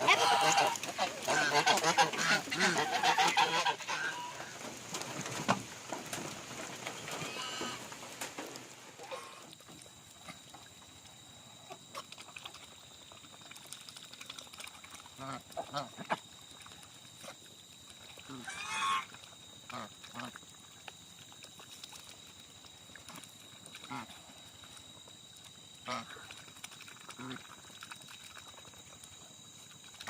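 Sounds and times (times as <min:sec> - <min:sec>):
geese honking: 0:00.0 - 0:04.5, 0:18.4 - 0:19.1.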